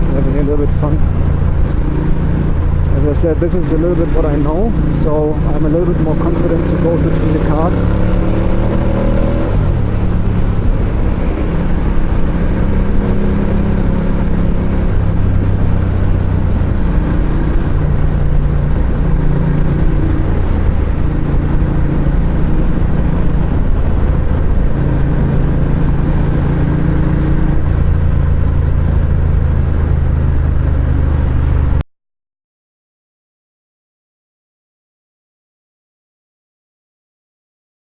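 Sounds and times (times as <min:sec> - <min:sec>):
motorcycle engine revving: 0:00.0 - 0:31.8
wind and road noise: 0:00.0 - 0:31.8.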